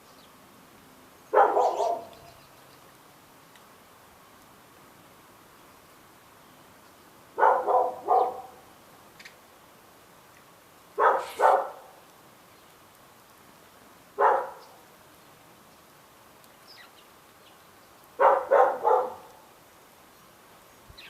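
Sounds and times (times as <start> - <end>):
faint bird chirps: 1.2 - 3.0, 16.6 - 18.0
dog barking: 1.3 - 2.1, 7.4 - 8.6, 11.0 - 12.0, 14.2 - 14.7, 18.2 - 19.3.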